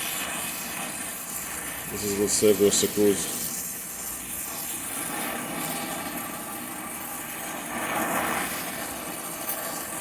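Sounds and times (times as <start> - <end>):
gas torch flame hissing: 0.0 - 10.0.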